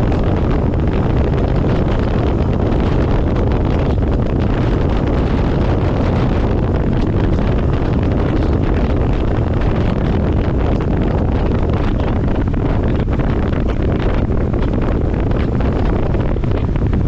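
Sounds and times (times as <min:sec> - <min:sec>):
vehicle noise: 0:00.0 - 0:17.0
wind buffeting microphone: 0:00.0 - 0:17.0.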